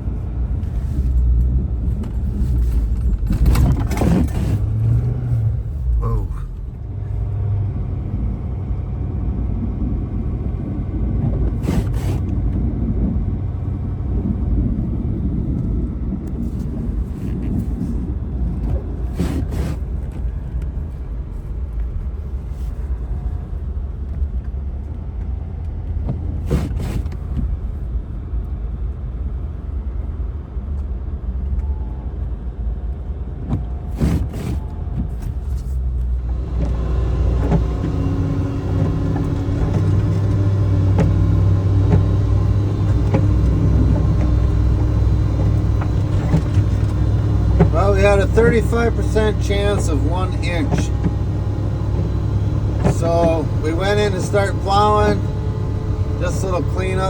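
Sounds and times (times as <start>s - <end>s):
vehicle engine running: 35.4s - 57.0s.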